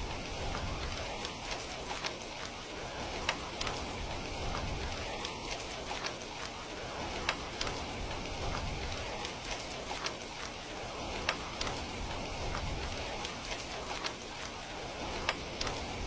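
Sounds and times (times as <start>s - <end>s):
heavy rain falling: 0.0s - 16.0s.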